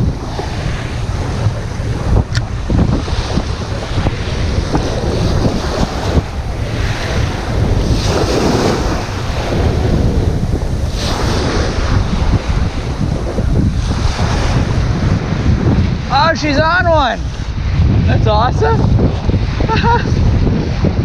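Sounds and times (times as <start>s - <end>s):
surf breaking on beach: 0.0s - 21.0s
wind buffeting microphone: 0.0s - 21.0s.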